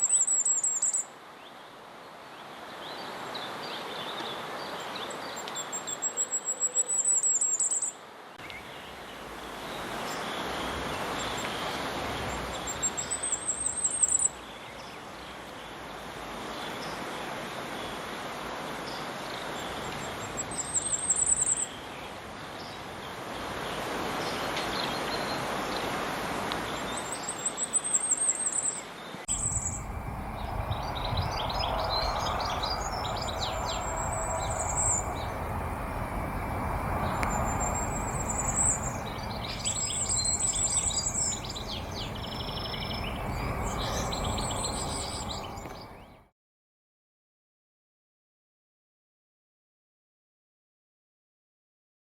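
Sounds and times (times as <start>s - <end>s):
high thin birdsong: 0.0s - 1.1s, 2.5s - 18.2s, 18.8s - 26.0s, 26.6s - 46.2s
steady outdoor hiss: 0.0s - 46.2s
other birds chirping: 26.7s - 46.2s.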